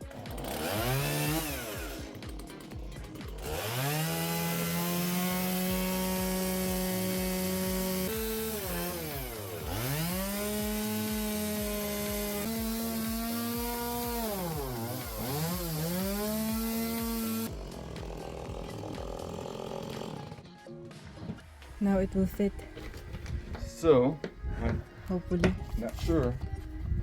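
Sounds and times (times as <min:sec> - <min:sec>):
chainsaw cutting wood: 0:00.0 - 0:20.6.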